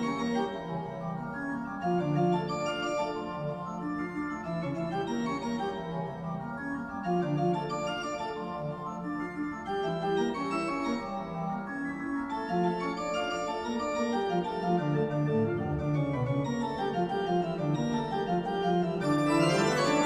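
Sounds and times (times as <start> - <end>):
organ music: 12.0 - 20.0.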